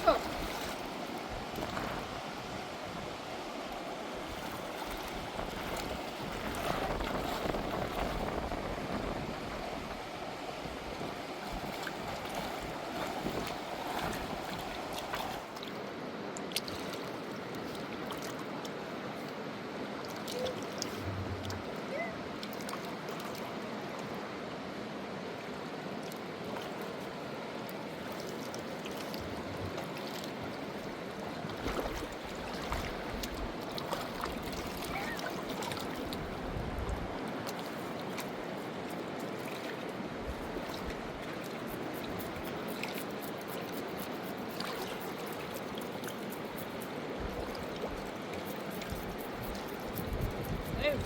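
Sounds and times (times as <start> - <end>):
river rushing: 0.0 - 29.1.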